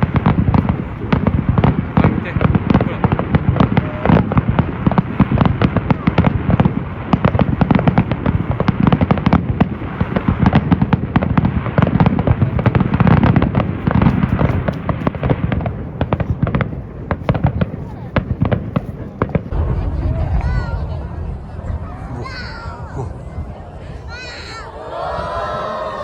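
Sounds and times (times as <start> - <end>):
fireworks crackling: 0.0 - 25.1
fireworks bangs: 0.0 - 26.0
low rumble: 19.5 - 26.0.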